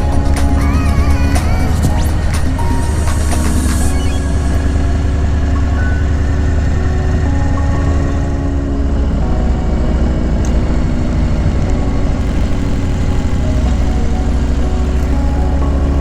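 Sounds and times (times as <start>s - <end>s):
motorcycle engine running: 12.2s - 16.0s.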